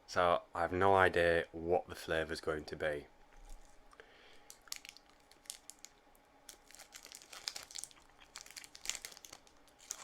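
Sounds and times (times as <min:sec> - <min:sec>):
sweet wrapper crinkling: 0:03.4 - 0:10.0.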